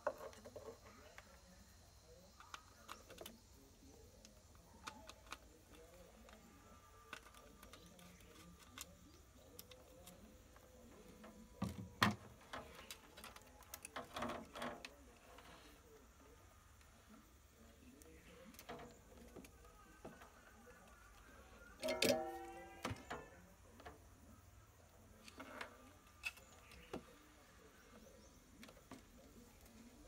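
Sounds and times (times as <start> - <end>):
tools clicking and tapping: 21.8 - 23.9.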